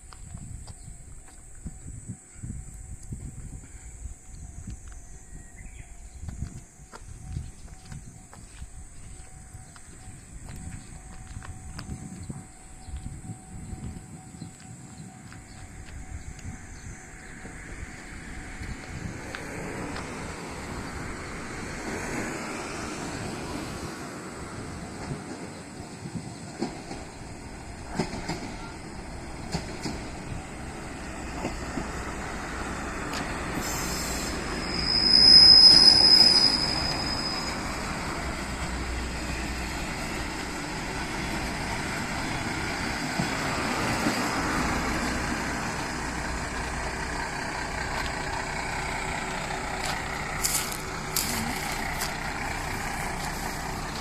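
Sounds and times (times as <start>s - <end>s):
diesel railcar rumbling: 0.0s - 54.0s
high-pitched metallic squeal: 33.6s - 38.6s.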